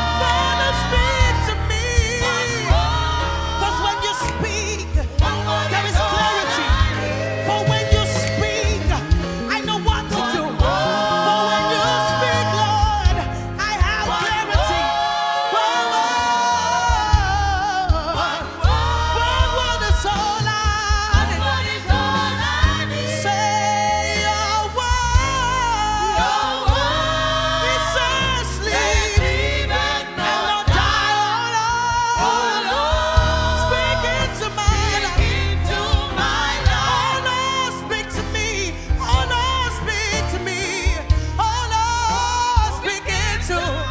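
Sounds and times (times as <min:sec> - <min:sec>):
choir singing gospel: 0:00.0 - 0:43.9
live band with bass and drums: 0:00.0 - 0:43.9.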